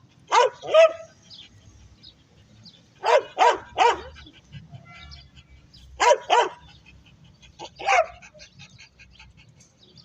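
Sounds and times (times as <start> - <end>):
dog barking: 0.3 - 1.1, 3.0 - 4.2, 6.0 - 6.6, 7.8 - 8.2.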